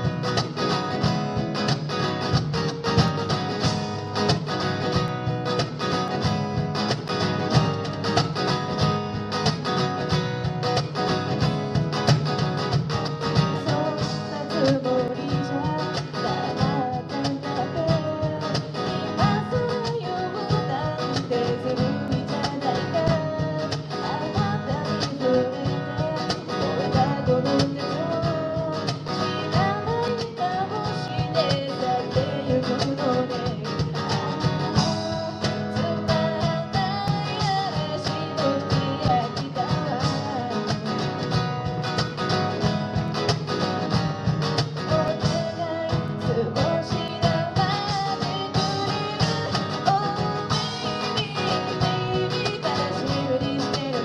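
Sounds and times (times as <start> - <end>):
cajon beat: 0.0 - 54.0
strummed acoustic guitar: 0.0 - 54.0
person singing: 13.4 - 41.2, 44.8 - 54.0.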